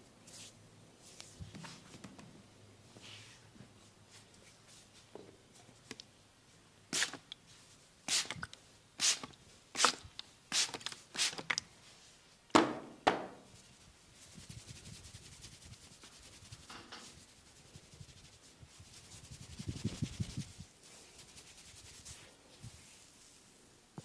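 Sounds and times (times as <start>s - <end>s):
hands rubbing skin: 14.2s - 23.1s.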